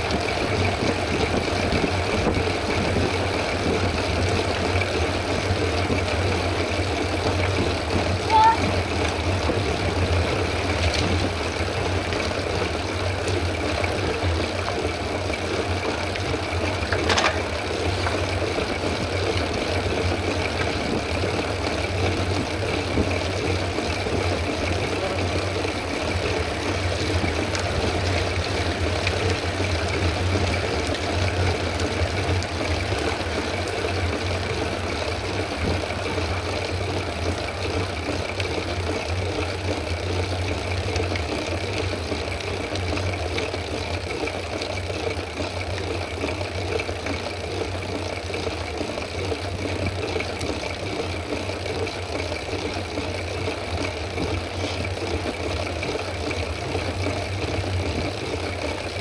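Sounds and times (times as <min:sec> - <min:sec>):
wind rush on microphone: 0:00.0 - 0:06.2.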